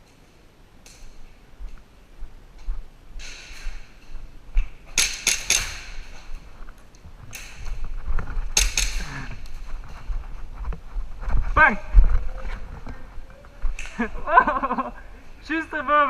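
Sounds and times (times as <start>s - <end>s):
scuffing noise: 9.4s - 14.3s.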